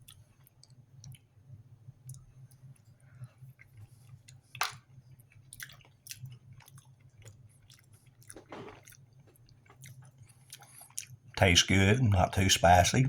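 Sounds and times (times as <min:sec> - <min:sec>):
wet chewing: 0:03.6 - 0:11.2.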